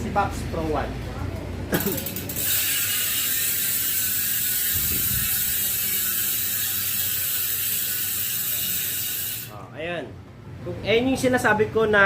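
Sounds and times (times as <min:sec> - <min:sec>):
bicycle hub ratchet clicking: 0:01.8 - 0:09.6.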